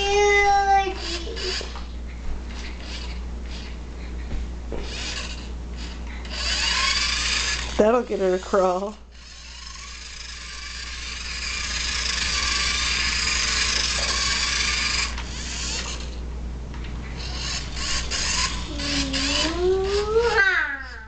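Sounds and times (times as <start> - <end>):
baby's voice: 0.0 - 1.8, 18.7 - 21.0
toy car electric motor whirring: 0.0 - 1.9, 2.5 - 3.8, 4.8 - 16.2, 17.2 - 21.0.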